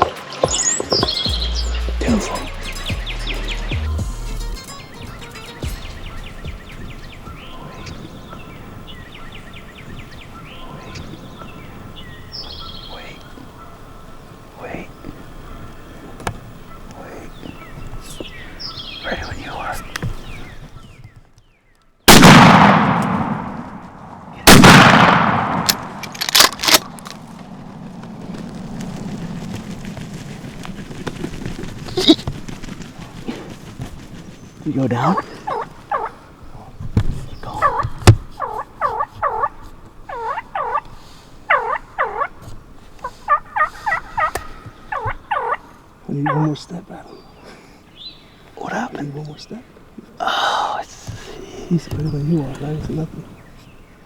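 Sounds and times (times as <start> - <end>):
steady outdoor hiss: 0.0 - 54.0
songbird singing high notes: 0.2 - 13.4
shotgun blasts with echo: 22.1 - 27.0.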